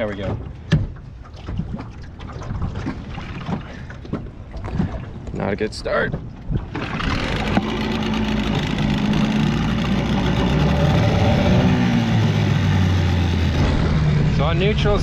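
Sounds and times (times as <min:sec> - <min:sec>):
outboard motor running: 0:06.4 - 0:15.0.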